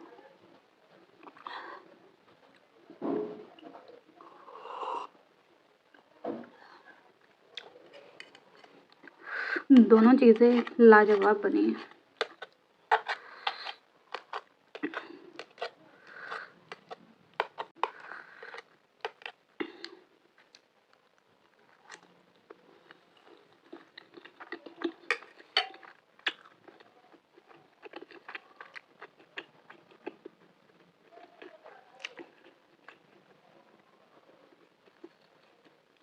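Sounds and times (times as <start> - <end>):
person chewing: 1.2 - 1.7, 7.5 - 9.8, 10.5 - 20.7, 21.5 - 33.3, 34.5 - 35.8.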